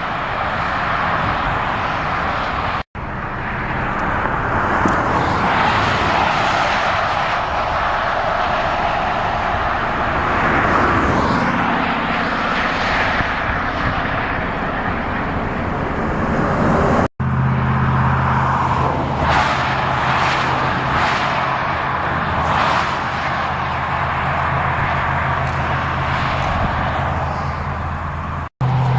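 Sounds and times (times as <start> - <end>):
road and tyre noise: 0.0 - 28.9
low engine hum: 7.1 - 28.9.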